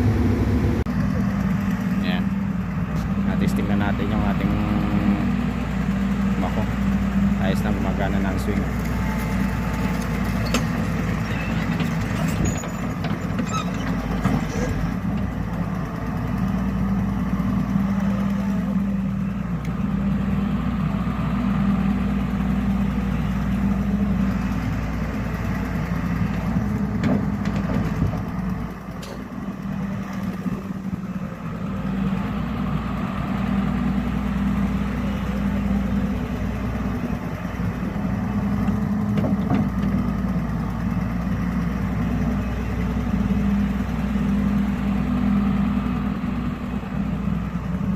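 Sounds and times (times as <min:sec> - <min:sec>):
low drone: 0:00.0 - 0:01.3
excavator diesel engine running: 0:00.0 - 0:47.9.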